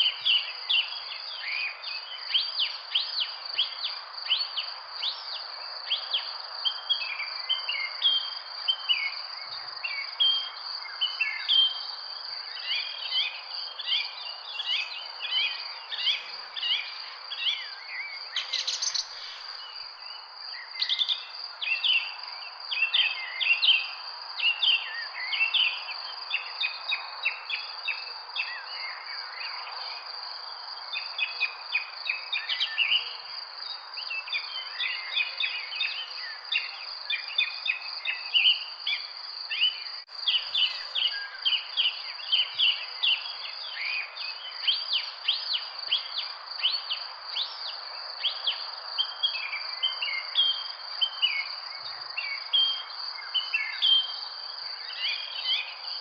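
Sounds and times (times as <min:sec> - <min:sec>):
birds chirping: 0:40.1 - 0:41.9.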